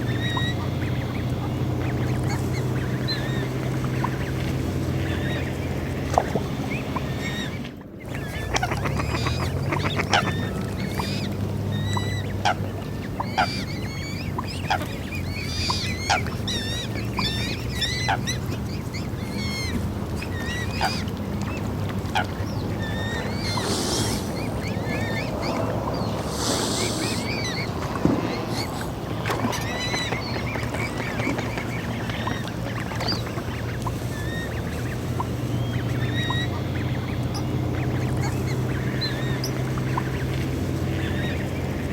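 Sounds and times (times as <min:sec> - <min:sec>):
steady low hum: 0:00.0 - 0:41.9
waterfowl honking and chirping: 0:00.0 - 0:41.9
hissy bursts: 0:23.5 - 0:24.4, 0:26.2 - 0:27.5.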